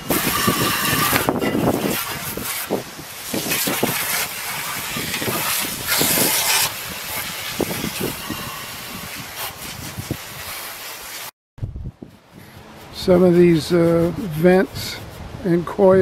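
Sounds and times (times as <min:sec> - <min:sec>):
garden hose spraying water: 0:00.0 - 0:11.3.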